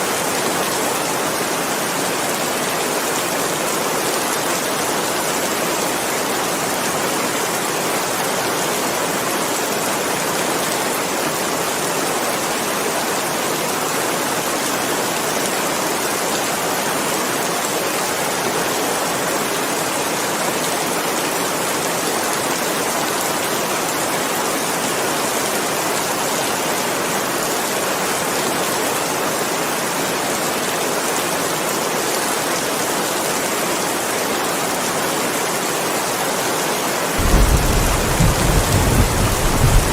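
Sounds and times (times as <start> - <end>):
heavy rain: 0.0 - 39.9.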